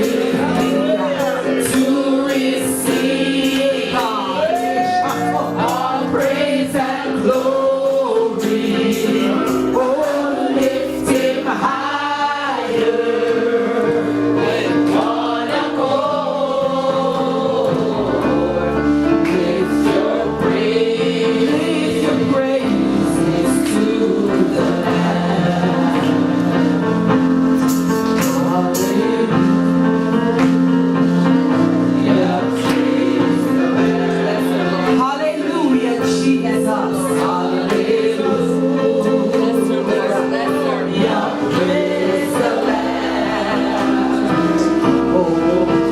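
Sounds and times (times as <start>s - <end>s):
drum or cymbal hits: 0.0s - 12.2s, 19.3s - 39.6s
choir and soloist singing gospel: 0.0s - 45.9s
sustained keyboard chords: 0.0s - 45.9s.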